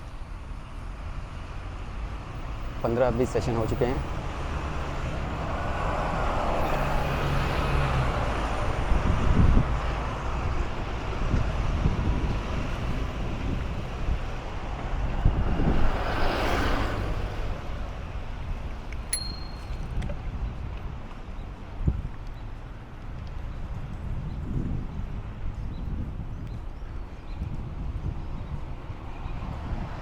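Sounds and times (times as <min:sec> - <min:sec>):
rumble of passing vehicles: 0:00.0 - 0:30.0
vehicle passing close: 0:04.1 - 0:09.3.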